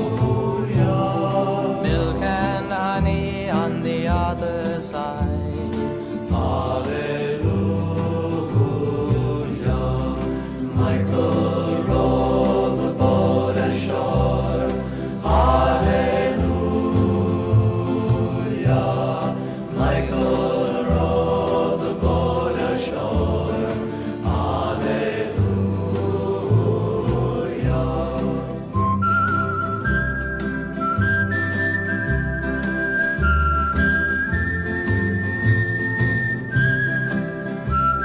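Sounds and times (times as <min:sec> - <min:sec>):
vocal group singing in harmony: 0:00.0 - 0:30.0
bass and guitar accompaniment: 0:00.0 - 0:38.0.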